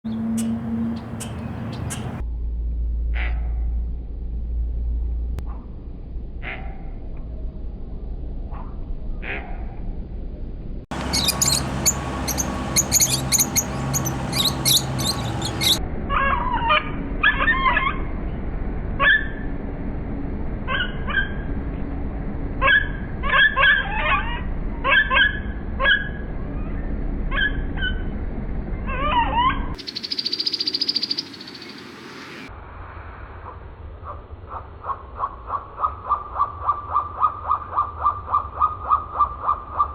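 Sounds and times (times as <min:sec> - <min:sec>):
buzzy bird trill: 0:10.9 - 0:15.8, 0:29.8 - 0:32.5
slowed-down bird calls: 0:10.9 - 0:15.8, 0:29.8 - 0:32.5.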